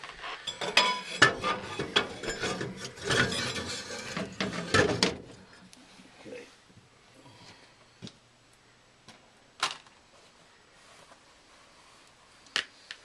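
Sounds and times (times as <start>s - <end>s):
screwdriver scraping on metal: 0.4s - 5.1s.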